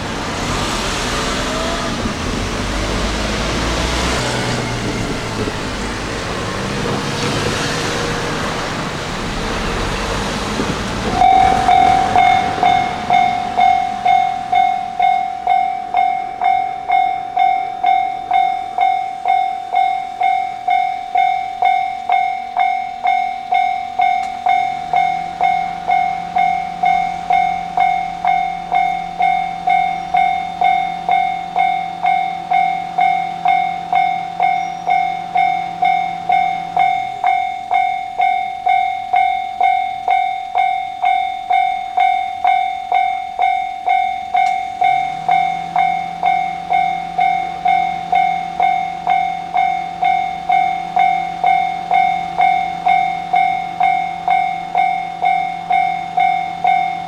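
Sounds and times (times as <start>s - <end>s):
low hum rising in pitch: 0.0s - 16.6s
level-crossing warning bell ringing: 0.0s - 57.0s.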